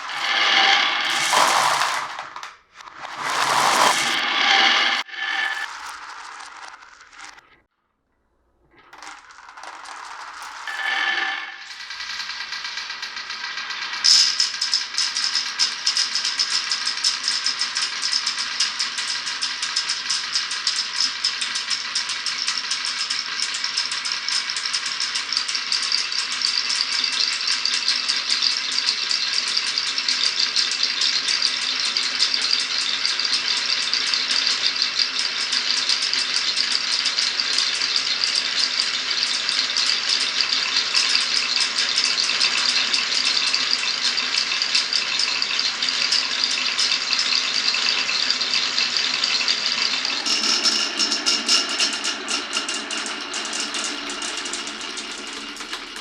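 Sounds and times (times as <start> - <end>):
marbles rolling and clicking: 0.0 - 7.6, 8.7 - 25.2, 26.4 - 56.0.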